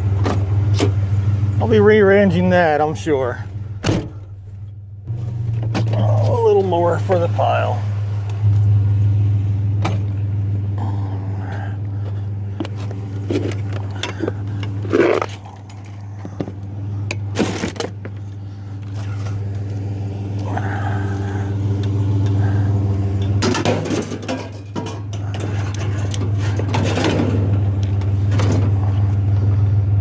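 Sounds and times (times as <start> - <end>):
truck engine idling: 0.0 - 30.0
scrap metal knocking and rattling: 23.1 - 29.0.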